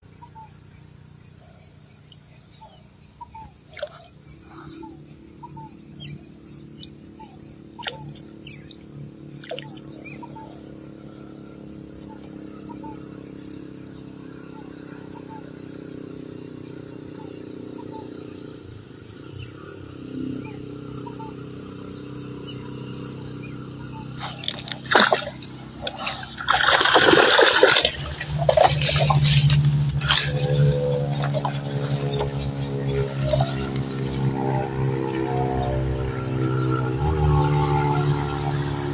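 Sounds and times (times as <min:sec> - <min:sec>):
insect buzz: 0:00.1 - 0:38.9
water splashing: 0:03.6 - 0:04.4, 0:07.6 - 0:11.0, 0:24.0 - 0:38.9.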